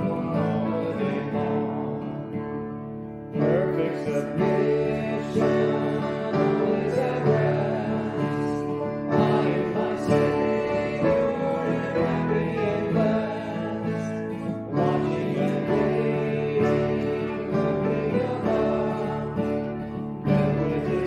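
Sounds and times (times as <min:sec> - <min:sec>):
acoustic guitar: 0:00.0 - 0:21.0
congregation singing a hymn: 0:00.0 - 0:21.0.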